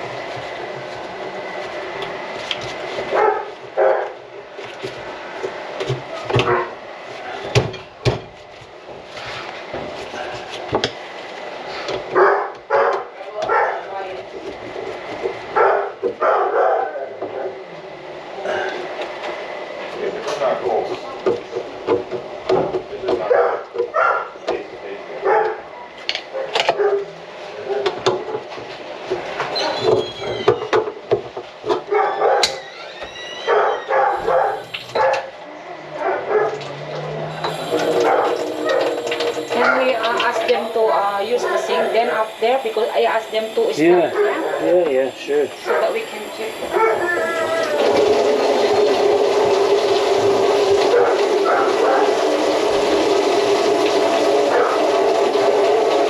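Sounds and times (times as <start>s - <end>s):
dog barking: 3.1s - 4.2s, 6.4s - 6.8s, 12.1s - 13.9s, 15.5s - 17.5s, 23.2s - 24.4s, 25.2s - 27.8s, 31.9s - 32.6s, 33.5s - 36.8s, 37.5s - 40.0s, 44.1s - 44.9s, 45.6s - 46.1s, 46.7s - 47.2s, 50.8s - 52.2s, 54.4s - 54.9s
dog whining: 29.5s - 30.7s, 31.9s - 39.9s, 44.0s - 44.9s, 46.7s - 48.0s
machine motor humming: 33.9s - 56.0s.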